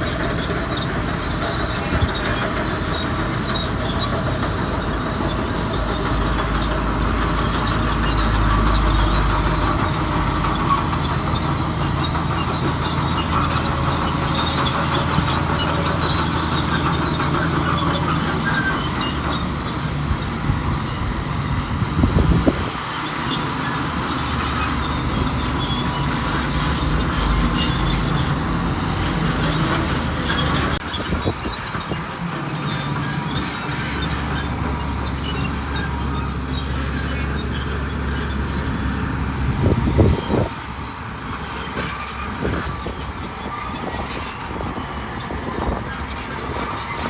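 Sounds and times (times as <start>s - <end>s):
diesel engine running: 0.0s - 47.0s
metallic squeal and clatter of tracks: 0.0s - 47.0s.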